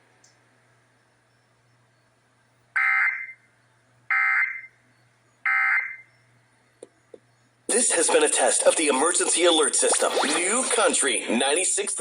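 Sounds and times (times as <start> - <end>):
digital data tone bursts: 7.7 - 12.0.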